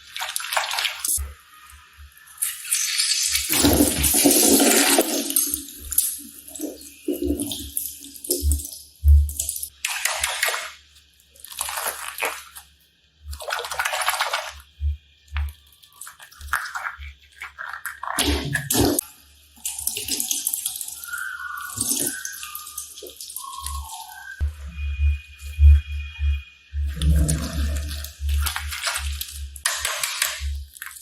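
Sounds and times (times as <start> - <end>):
slime squelching and crackling: 0.0 - 1.2, 2.4 - 24.4, 26.9 - 31.0
soft low thumps: 8.4 - 9.3, 24.4 - 28.4.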